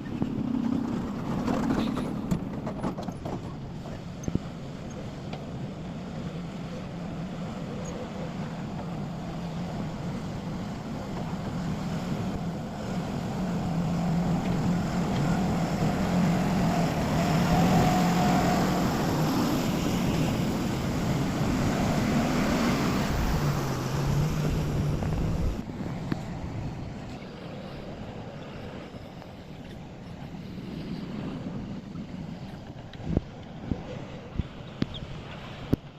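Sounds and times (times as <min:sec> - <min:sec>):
excavator diesel engine: 0:00.0 - 0:31.6.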